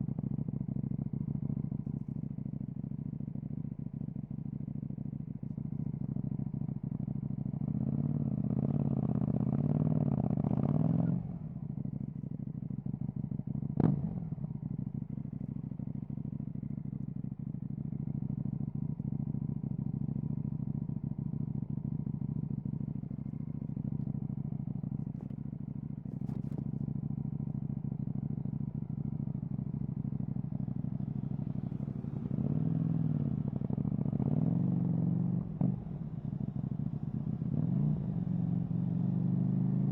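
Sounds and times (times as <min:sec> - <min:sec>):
motorcycle engine droning: 0:08.4 - 0:39.9.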